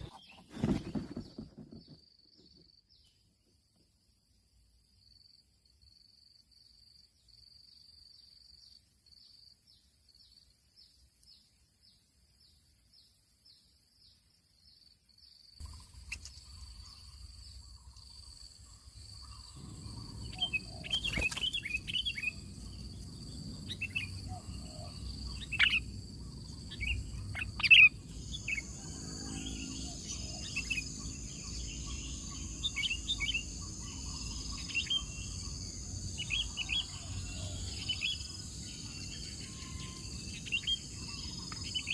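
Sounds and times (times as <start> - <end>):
birds chirping: 0.0 - 3.3, 15.6 - 41.9
outdoor background noise: 0.0 - 41.9
faint high pulsing chirp: 13.5 - 41.9.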